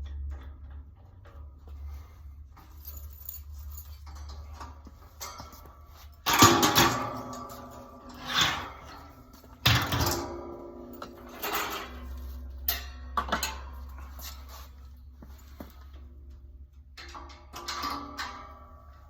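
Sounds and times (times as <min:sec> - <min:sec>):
metal rack parts clanking: 0:02.6 - 0:14.8, 0:17.0 - 0:19.0.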